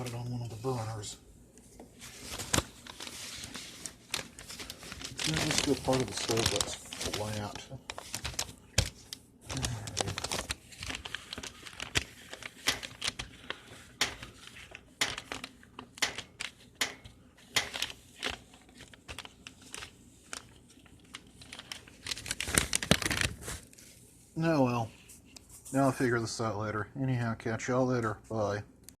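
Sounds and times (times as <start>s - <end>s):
hands crinkling paper: 2.0s - 26.2s.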